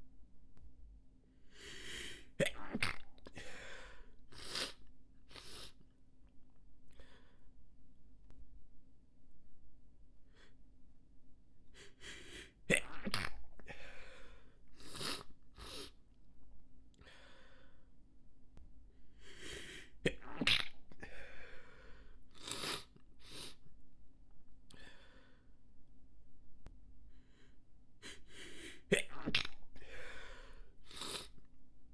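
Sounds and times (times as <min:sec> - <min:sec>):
person stifled sneezes: 0:02.4 - 0:03.0, 0:28.7 - 0:29.6.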